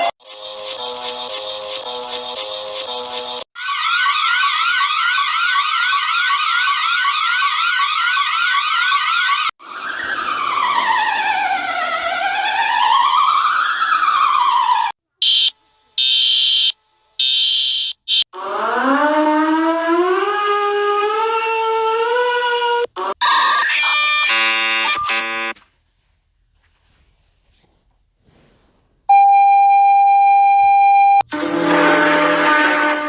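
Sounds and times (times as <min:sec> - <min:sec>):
siren wail: 0:03.6 - 0:25.6
electronic alarm tones: 0:15.2 - 0:18.2, 0:23.0 - 0:25.6, 0:29.1 - 0:31.4
loud high beeps: 0:29.1 - 0:31.2.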